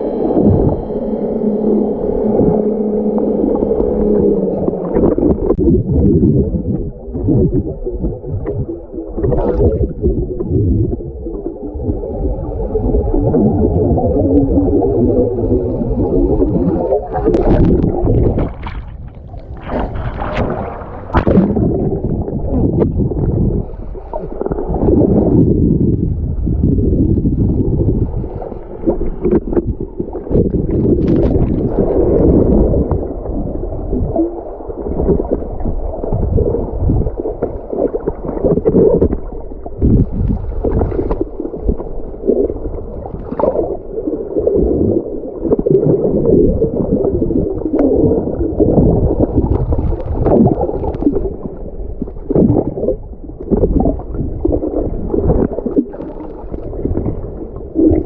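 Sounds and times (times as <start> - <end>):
wind on microphone: 0.0 - 58.0
water sloshing around kayak: 16.3 - 23.5.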